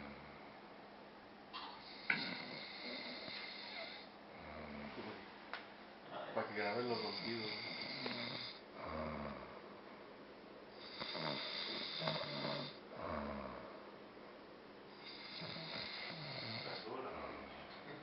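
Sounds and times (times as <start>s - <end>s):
man snoring heavily: 1.8s - 4.9s, 6.8s - 9.5s, 10.8s - 13.7s, 15.0s - 17.4s.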